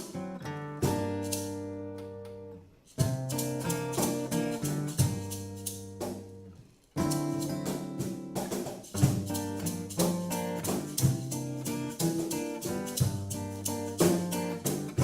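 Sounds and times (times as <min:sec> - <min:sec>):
drums keeping a beat: 0:00.8 - 0:01.6, 0:03.0 - 0:06.4, 0:07.0 - 0:15.0.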